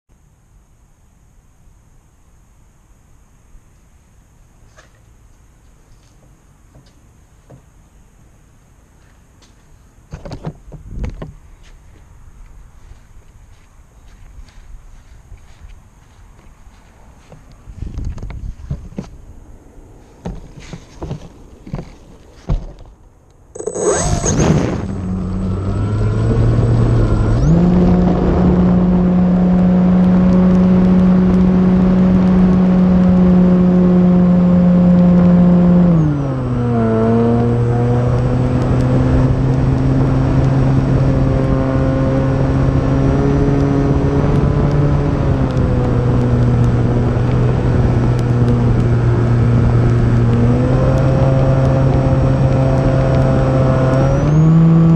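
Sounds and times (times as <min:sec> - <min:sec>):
wind noise: 0:10.2 - 0:11.7, 0:16.8 - 0:54.9
electric motor drone: 0:23.6 - 0:54.9.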